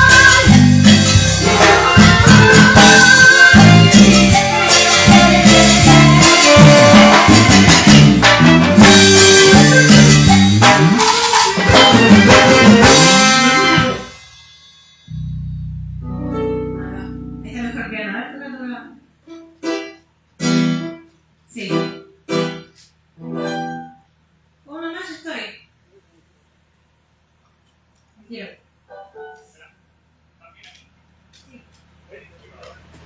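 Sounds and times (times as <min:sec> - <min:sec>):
live latin dance band: 0:00.0 - 0:14.2
low steady hum: 0:15.1 - 0:19.5.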